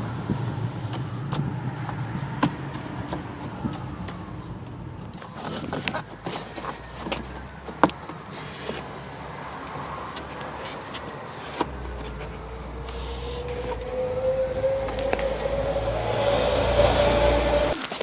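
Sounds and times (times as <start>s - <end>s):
vehicle motor whine: 0.0s - 10.4s, 11.5s - 18.0s
low rumble: 11.7s - 17.8s.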